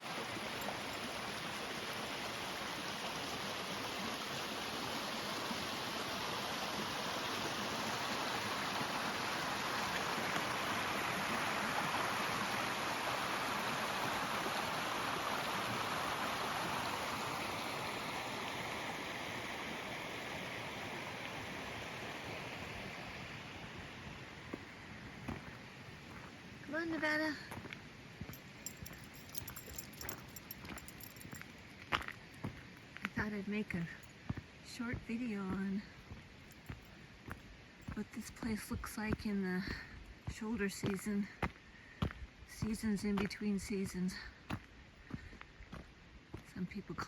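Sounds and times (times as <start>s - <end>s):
stream water rushing: 0.0s - 41.9s.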